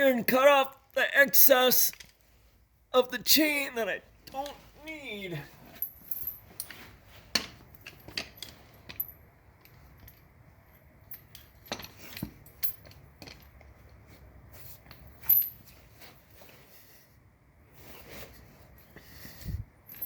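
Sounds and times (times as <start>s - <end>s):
metal chain links clinking: 5.6s - 7.0s, 7.7s - 13.6s, 14.8s - 15.8s.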